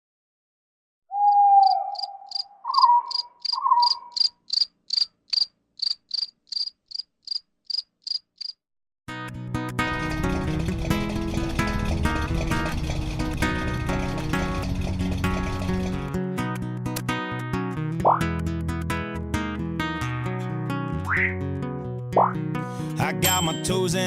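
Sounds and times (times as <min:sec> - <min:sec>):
swooping whistle-like tone: 0:01.1 - 0:04.2
cricket chirping: 0:01.2 - 0:08.6
guitar-led music: 0:09.1 - 0:24.0.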